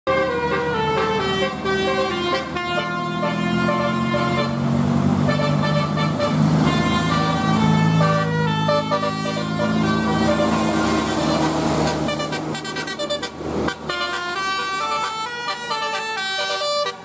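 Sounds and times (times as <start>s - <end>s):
multi-tone air horns playing tune: 0.1s - 17.0s.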